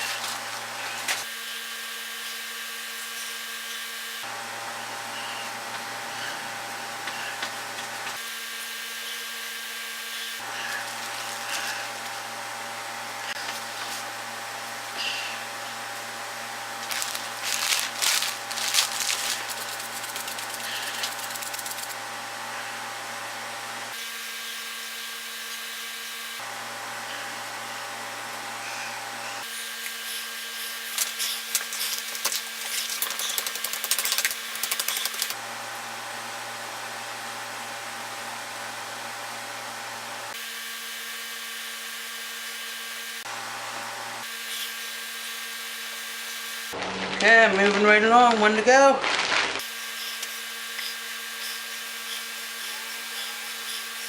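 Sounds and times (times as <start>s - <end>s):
steady mechanical hum: 0.0s - 54.0s
food wrapping crinkling: 16.8s - 22.0s, 46.9s - 49.6s.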